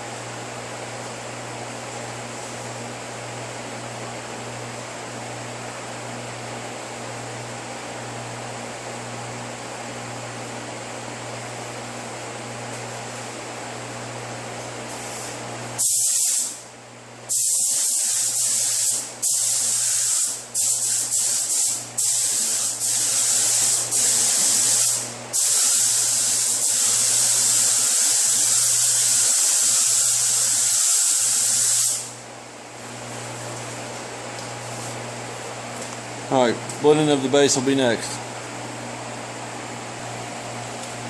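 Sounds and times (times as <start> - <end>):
spray gun hissing: 15.0 - 16.6, 17.3 - 32.1
steady low hum: 16.5 - 41.0.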